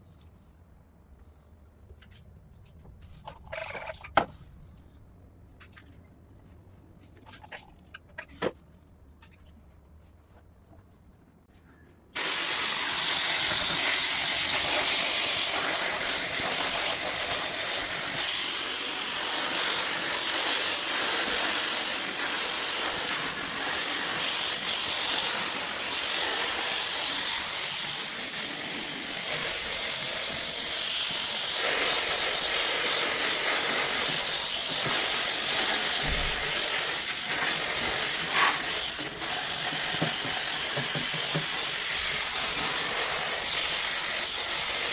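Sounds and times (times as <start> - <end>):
pressure spray hissing: 12.2 - 44.9.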